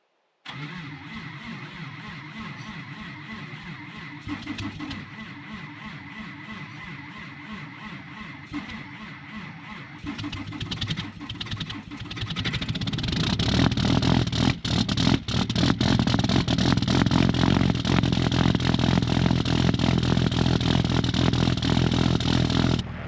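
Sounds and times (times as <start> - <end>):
starter motor cranking: 0.5 - 22.8
diesel engine running rough: 0.5 - 23.0.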